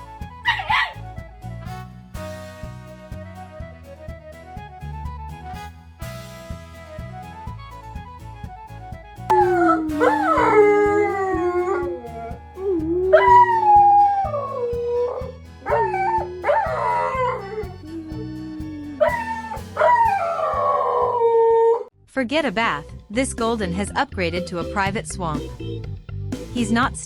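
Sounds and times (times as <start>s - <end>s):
background music: 0.0s - 27.0s
dog howling: 9.3s - 21.9s.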